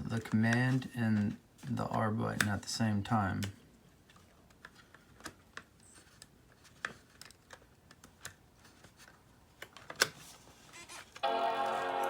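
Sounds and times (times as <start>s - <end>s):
laptop startup chime: 11.2s - 12.0s.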